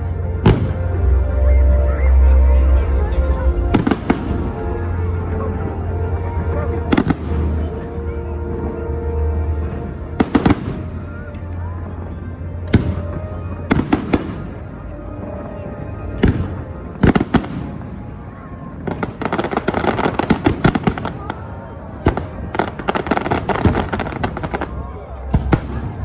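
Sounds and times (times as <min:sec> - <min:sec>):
fireworks crackling and popping: 0:18.8 - 0:21.5.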